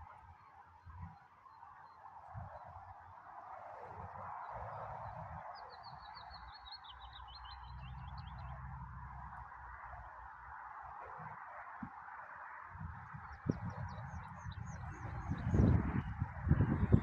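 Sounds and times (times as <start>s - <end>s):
small bird singing: 5.1s - 8.6s, 13.2s - 17.0s.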